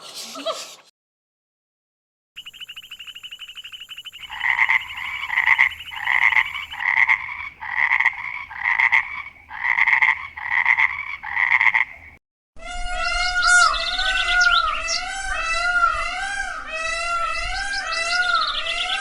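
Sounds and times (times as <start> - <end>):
frog croaks: 2.4 - 12.2
frogs trilling: 2.4 - 12.2.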